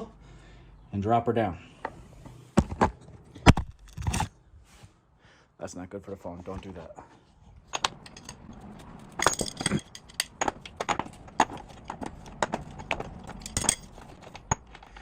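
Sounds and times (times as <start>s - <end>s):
metal tools clinking and knocking: 7.6s - 15.0s.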